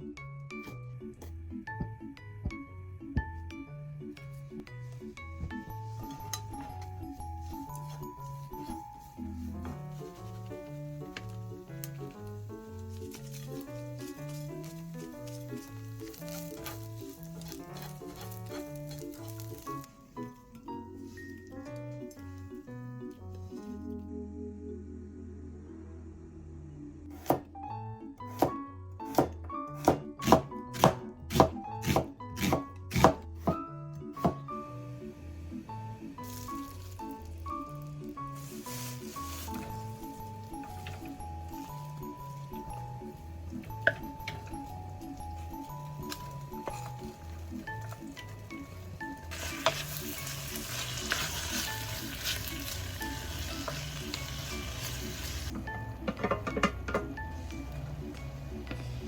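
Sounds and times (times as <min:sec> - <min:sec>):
background music: 0:00.0 - 0:59.0
knife chopping on cutting board: 0:28.4 - 0:33.6
food sizzling in a frying pan: 0:36.0 - 0:40.5, 0:47.3 - 0:55.6.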